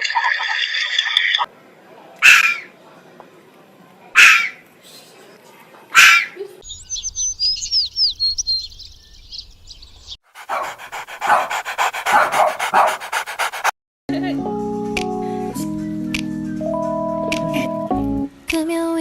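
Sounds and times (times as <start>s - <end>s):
dog barking: 4.2s - 4.6s, 5.9s - 6.4s, 10.3s - 13.7s
small birds chirping: 6.0s - 12.9s
dog panting: 10.2s - 13.8s.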